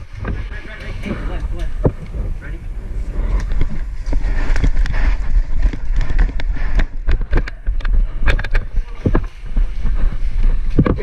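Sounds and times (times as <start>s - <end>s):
wind buffeting microphone: 0.0s - 11.0s
sharp clicks and knocks: 3.4s - 11.0s.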